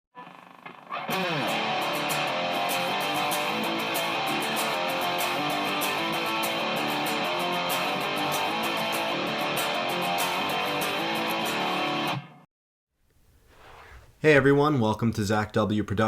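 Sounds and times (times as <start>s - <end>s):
strummed guitar music with beat: 1.1s - 12.4s.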